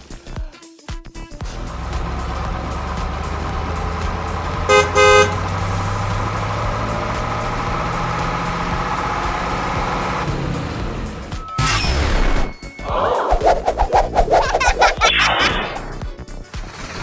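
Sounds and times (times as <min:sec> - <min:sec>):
vehicle engine running: 0:01.4 - 0:11.4
horn toots: 0:03.4 - 0:10.2.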